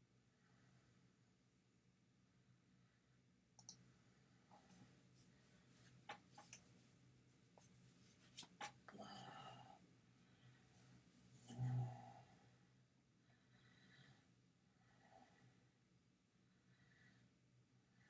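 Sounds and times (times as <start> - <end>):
faint clicks: 3.6 - 3.8.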